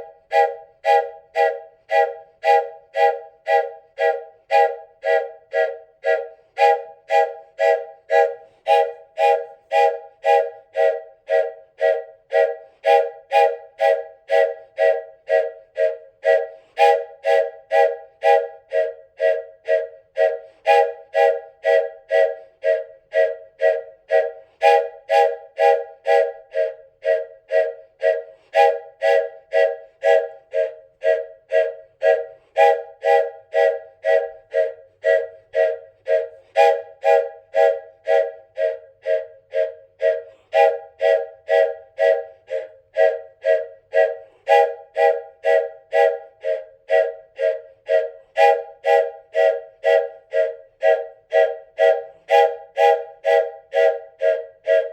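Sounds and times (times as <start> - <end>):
wooden train whistle toots: 0.0 - 54.9.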